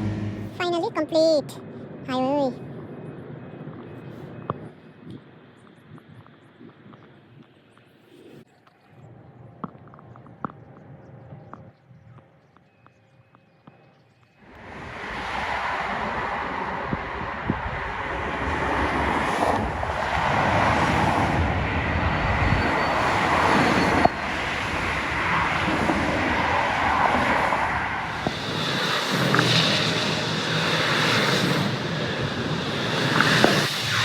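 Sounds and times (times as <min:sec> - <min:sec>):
highway traffic rushing: 0:00.0 - 0:02.5, 0:14.5 - 0:34.0.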